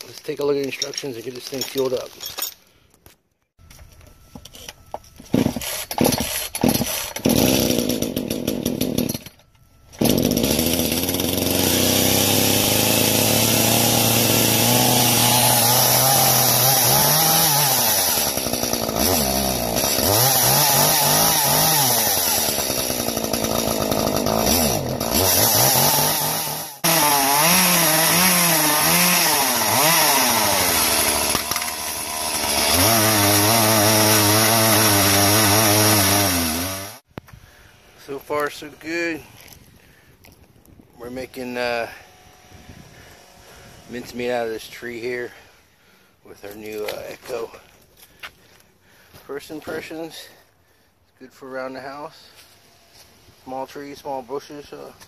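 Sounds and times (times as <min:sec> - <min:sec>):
chainsaw revving while cutting: 0:05.6 - 0:09.3, 0:10.0 - 0:37.0.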